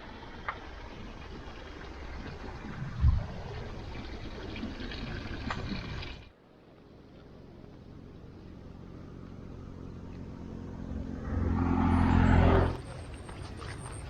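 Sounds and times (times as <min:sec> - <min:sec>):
engine humming: 0:06.1 - 0:14.0.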